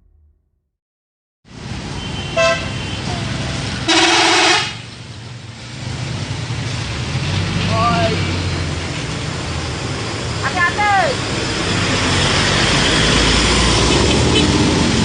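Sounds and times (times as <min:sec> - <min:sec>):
engine and road noise: 0:01.5 - 0:15.0
bus musical horn: 0:02.0 - 0:04.9.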